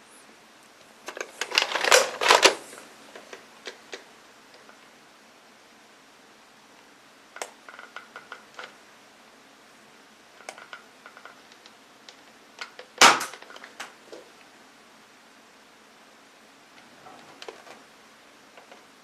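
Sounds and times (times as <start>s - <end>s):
toy gun clicks and rattles: 1.1s - 2.6s
loud sharp snap: 13.0s - 13.9s.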